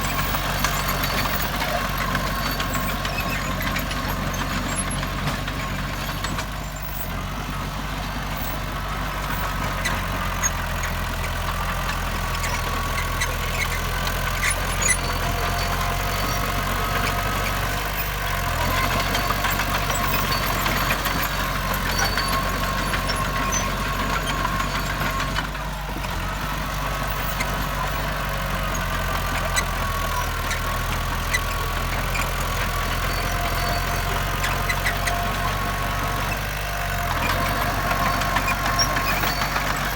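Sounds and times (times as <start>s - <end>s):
heavy diesel machinery running: 0.0s - 39.9s.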